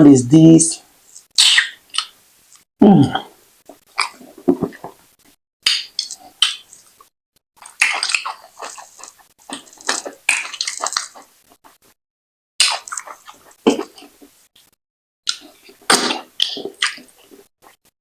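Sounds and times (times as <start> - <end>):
wet smacking and slurping: 5.7 - 11.8, 12.6 - 14.4, 15.3 - 17.8.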